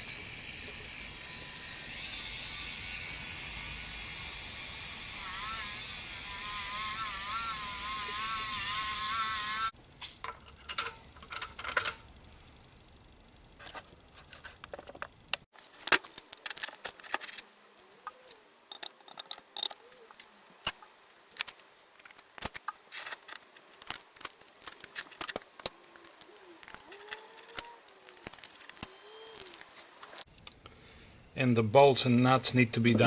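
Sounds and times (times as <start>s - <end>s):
metal hardware clicking: 15.6s - 30.2s.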